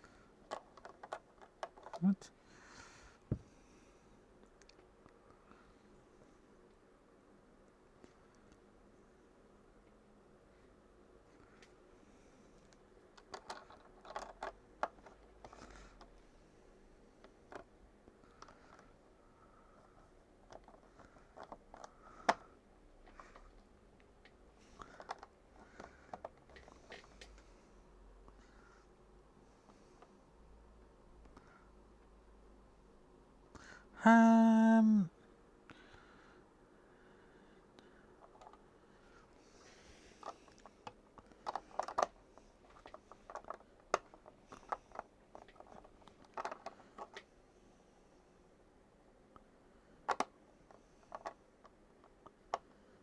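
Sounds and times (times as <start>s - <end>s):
plastic bricks clicking: 0.4s - 2.1s, 13.2s - 16.2s, 24.8s - 27.3s, 40.2s - 47.2s, 50.1s - 50.3s, 51.1s - 52.6s.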